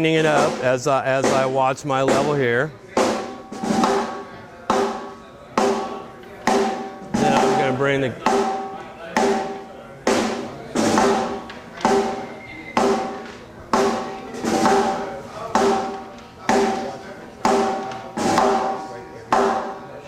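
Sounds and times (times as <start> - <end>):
snare drum hits: 0.2 - 19.8.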